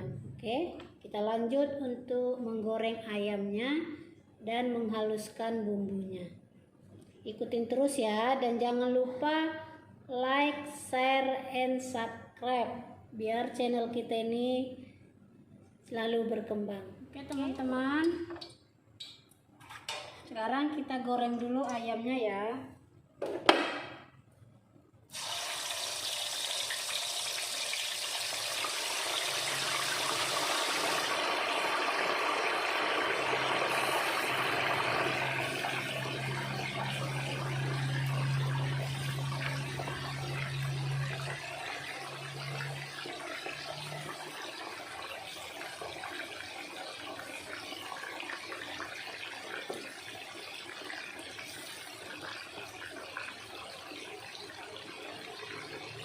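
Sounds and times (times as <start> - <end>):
chicken frying in hot oil: 25.1 - 56.0
low hum: 33.4 - 43.1.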